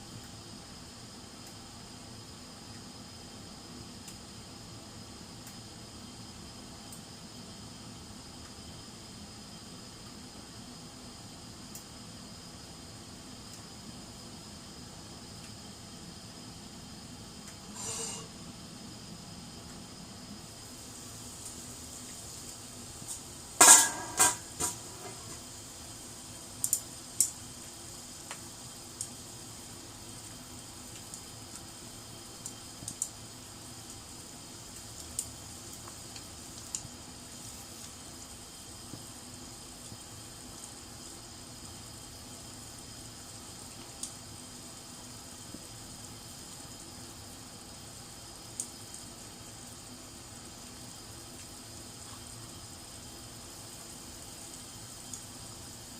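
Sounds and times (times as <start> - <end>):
pan sizzling: 17.6 - 18.6, 20.4 - 41.0
metal utensil clanking: 23.6 - 25.3.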